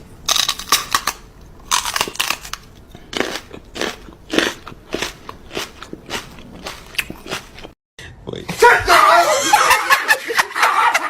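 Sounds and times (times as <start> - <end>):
crunching and chewing: 0.2 - 7.8.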